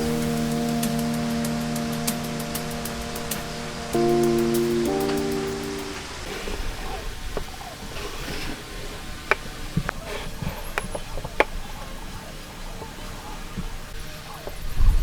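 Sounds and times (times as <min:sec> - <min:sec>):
hand tools tapping wood: 0:06.3 - 0:12.0.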